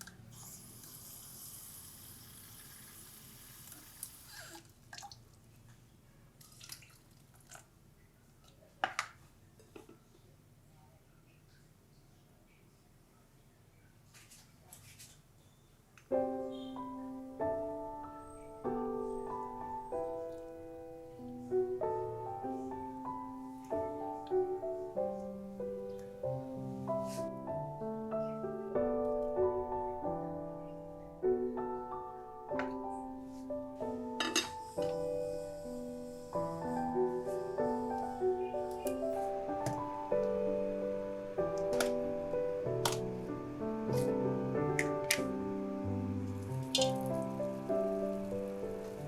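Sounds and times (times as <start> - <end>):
water running from tap: 0.5 - 4.6, 46.2 - 49.0
soft slow piano melody: 16.1 - 49.0
kitchenware clicks and knocks: 34.2 - 34.6.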